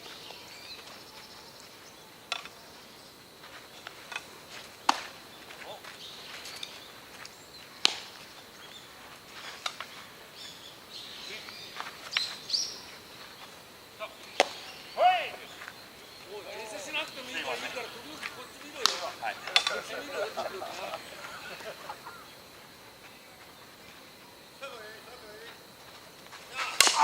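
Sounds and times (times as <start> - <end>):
faint bird chirps: 0.0 - 3.9, 5.2 - 25.5.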